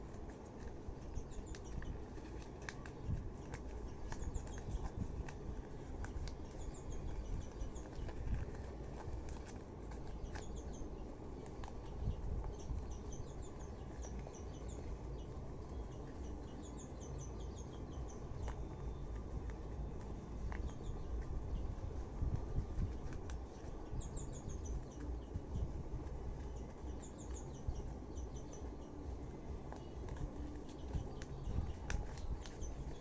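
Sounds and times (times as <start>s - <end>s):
low background rumble: 0.0s - 33.0s
small bird chirping: 0.0s - 33.0s.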